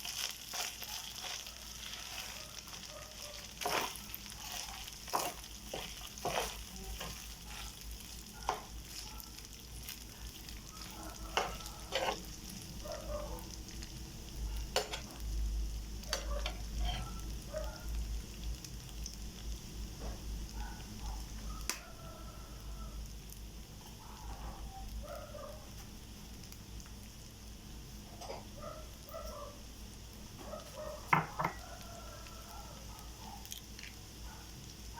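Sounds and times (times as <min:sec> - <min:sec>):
utensil stirring clicks and scrapes: 0:00.0 - 0:12.4, 0:14.7 - 0:15.2, 0:16.1 - 0:17.2
rice sizzling in a pan: 0:00.0 - 0:34.9.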